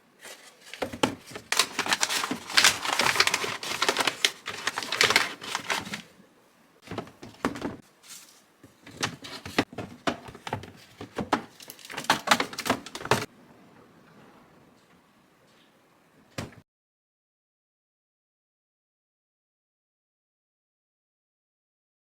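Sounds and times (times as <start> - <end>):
household items being handled: 0.0 - 6.2, 6.8 - 13.3.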